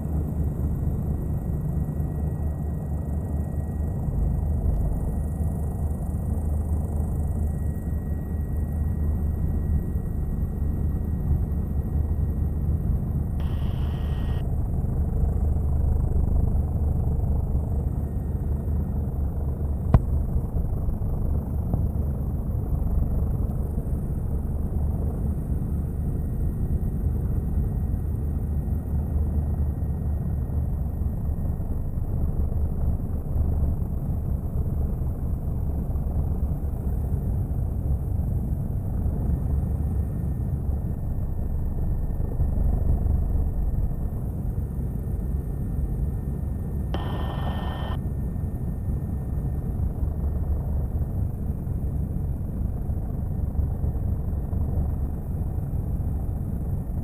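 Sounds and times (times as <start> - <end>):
helicopter rotor and engine drone: 0.0 - 57.0
short tone: 47.0 - 48.0.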